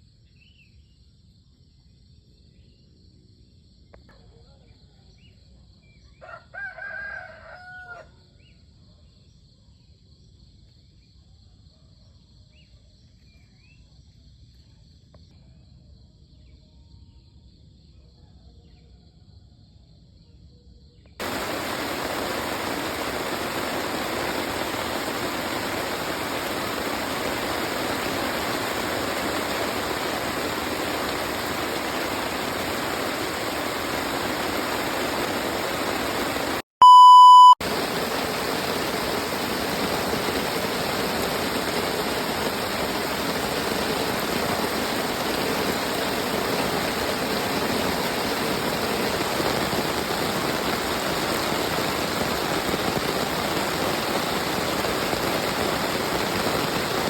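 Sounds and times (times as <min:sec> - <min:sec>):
insects chirping: 0:00.0 - 0:56.9
rooster crowing: 0:06.2 - 0:08.3.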